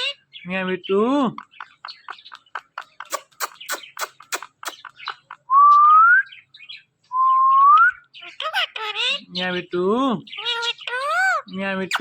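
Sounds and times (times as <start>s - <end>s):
parrot clicking chirps: 1.3s - 5.5s, 10.4s - 12.0s.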